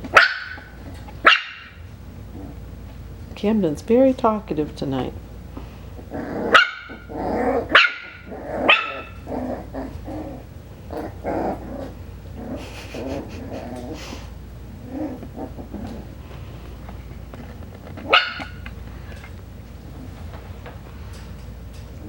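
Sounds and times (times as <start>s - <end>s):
puppy barking and grumbling: 0.0s - 2.7s, 6.0s - 16.3s, 17.9s - 18.7s.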